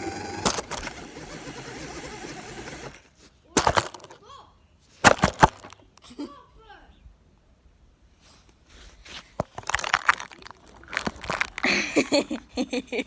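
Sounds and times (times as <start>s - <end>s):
whirring with rising whine: 0.0s - 3.0s.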